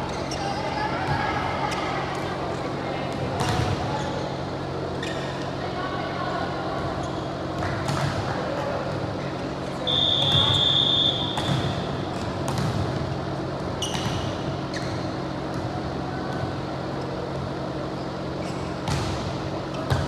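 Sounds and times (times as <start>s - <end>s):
high whistle blast: 9.9s - 11.4s
volleyball hits and thuds: 11.3s - 13.1s.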